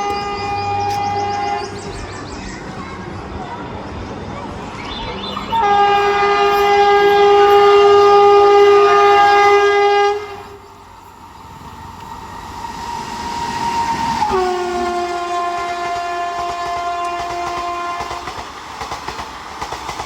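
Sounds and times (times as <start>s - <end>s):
locomotive horn blast: 0.0s - 1.9s, 5.4s - 10.6s, 14.2s - 18.3s
train running past: 0.0s - 20.0s.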